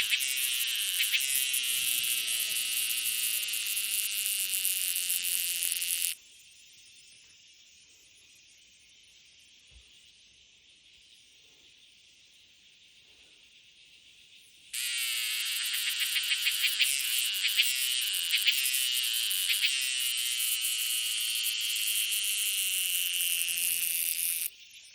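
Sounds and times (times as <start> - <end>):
insect buzzing call: 0.0 - 6.2, 14.8 - 24.9.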